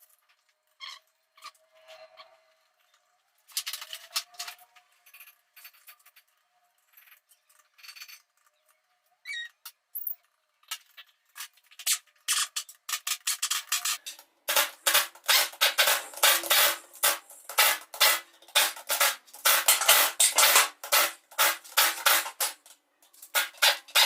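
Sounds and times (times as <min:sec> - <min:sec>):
metal tools clinking and scraping: 0:12.3 - 0:24.0.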